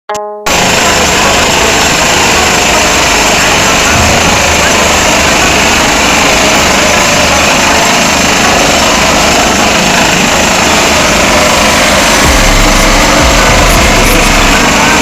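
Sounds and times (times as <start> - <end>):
industrial vibrator running: 0.5 - 15.0
deep low hum: 3.8 - 7.0, 11.9 - 15.0.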